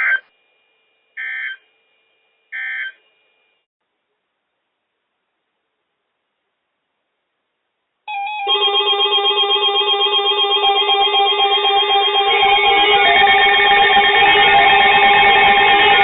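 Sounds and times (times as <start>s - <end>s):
electronic warbling alert tone: 8.1s - 16.0s.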